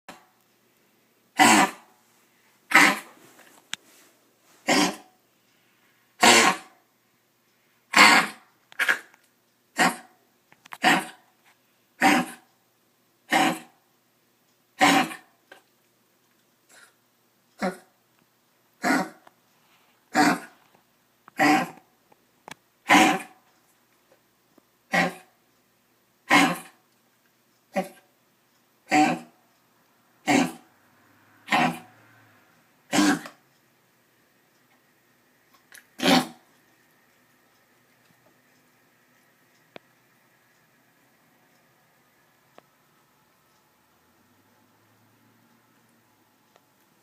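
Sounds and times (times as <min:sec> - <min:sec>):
dog coughing: 0:01.4 - 0:01.9, 0:02.7 - 0:03.1, 0:04.6 - 0:05.1, 0:06.2 - 0:06.8, 0:07.9 - 0:09.1, 0:09.8 - 0:10.1, 0:12.0 - 0:12.4, 0:13.3 - 0:13.7, 0:14.8 - 0:15.2, 0:17.6 - 0:17.9, 0:18.8 - 0:19.2, 0:20.1 - 0:20.5, 0:21.4 - 0:21.8, 0:22.9 - 0:23.4, 0:24.9 - 0:25.3, 0:26.3 - 0:26.8, 0:28.9 - 0:29.3, 0:30.2 - 0:30.6, 0:31.5 - 0:31.9, 0:32.9 - 0:33.4, 0:36.0 - 0:36.4.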